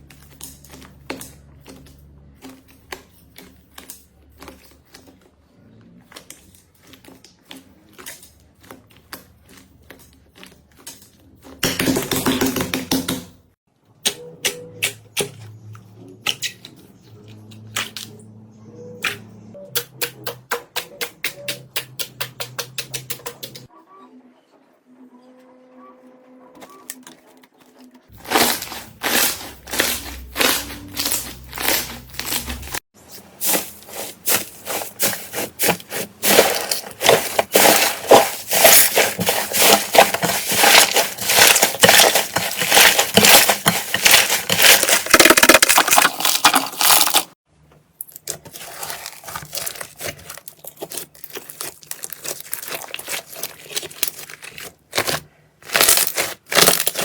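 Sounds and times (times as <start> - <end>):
slime squeezed by hand crackling: 34.7 - 47.3.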